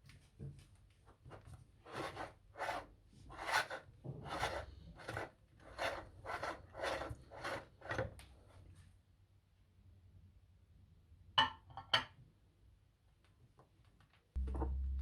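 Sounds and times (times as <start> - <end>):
meat grinder rasping scrape: 3.4 - 8.1.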